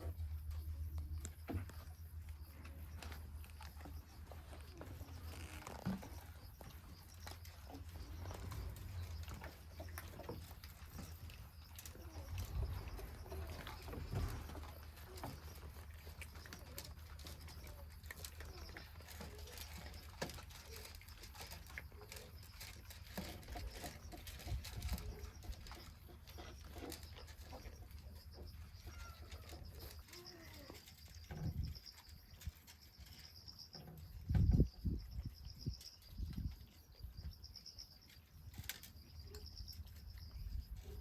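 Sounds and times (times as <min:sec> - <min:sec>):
faint animal calls: 0:00.0 - 0:33.7.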